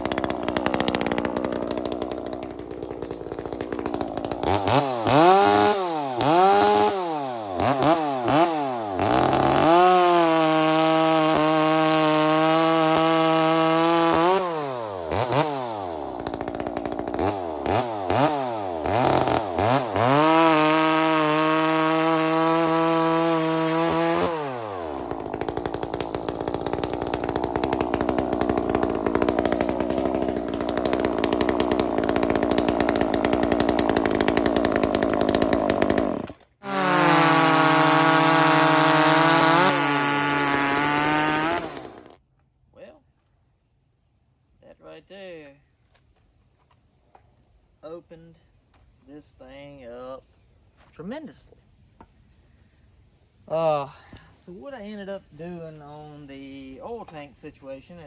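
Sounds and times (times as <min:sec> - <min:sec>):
chainsaw idling: 0:00.0 - 0:42.2
chainsaw revving: 0:00.0 - 0:42.2.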